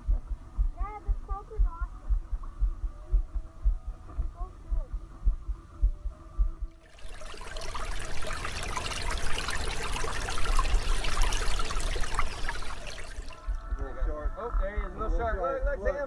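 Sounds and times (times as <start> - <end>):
water splashing and trickling: 6.8 - 13.8.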